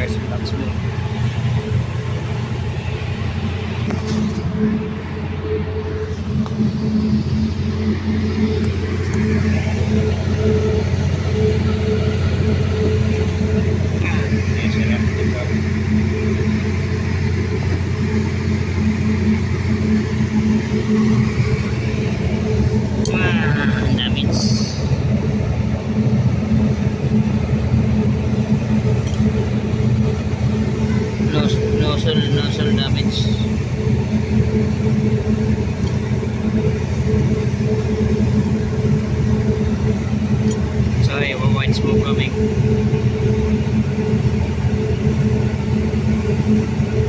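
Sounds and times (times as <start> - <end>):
diesel engine running: 0.0 - 47.0.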